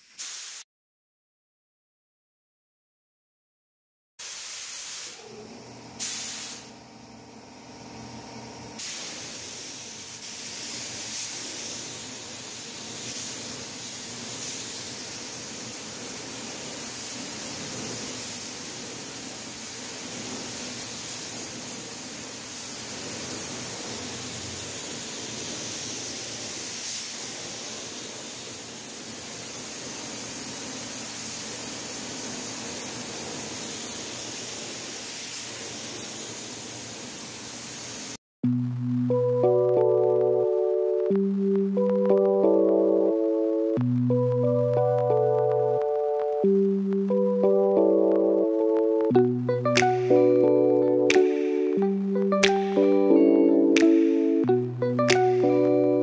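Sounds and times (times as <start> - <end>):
steady hissing noise: 4.2 - 6.8, 8.8 - 38.2, 49.7 - 51.8.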